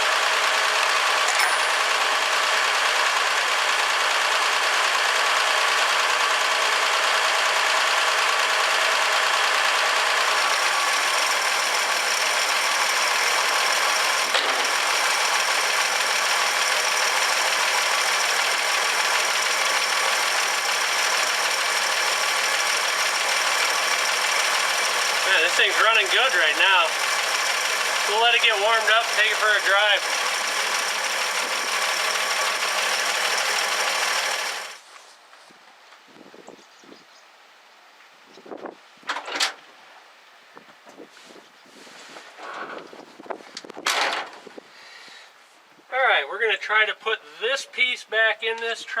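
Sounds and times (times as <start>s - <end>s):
pickup engine idling: 0.0s - 34.8s.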